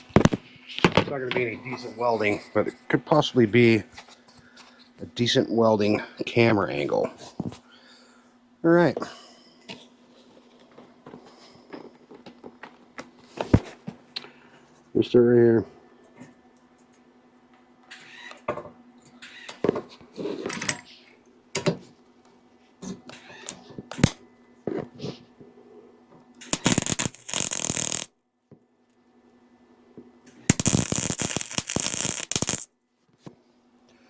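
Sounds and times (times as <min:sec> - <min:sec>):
steady low hum: 0:00.0 - 0:17.9
torch clicks and scrapes: 0:26.4 - 0:28.1, 0:30.5 - 0:32.7
welding arc crackling: 0:26.4 - 0:28.1, 0:30.5 - 0:32.7.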